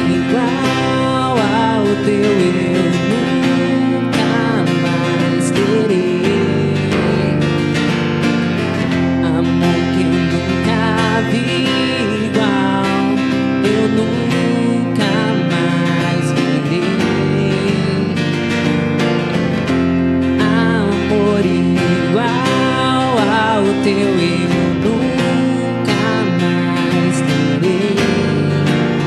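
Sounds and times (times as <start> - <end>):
acoustic guitar strumming: 0.0 - 29.0.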